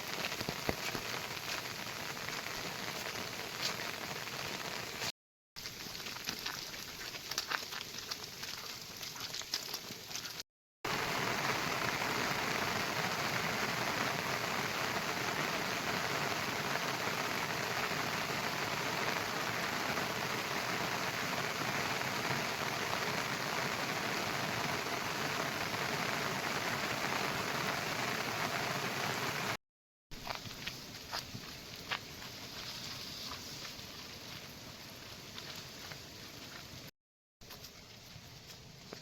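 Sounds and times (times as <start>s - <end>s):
heavy rain falling: 0.0s - 5.1s, 10.9s - 29.6s.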